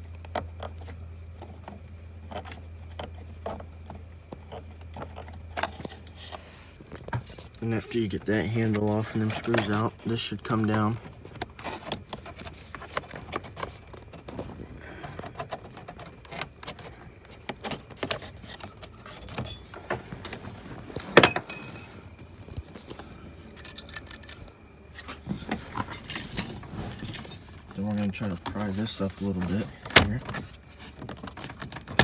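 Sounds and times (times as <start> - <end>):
loud metallic jingle: 21.2 - 22.2, 23.6 - 24.4.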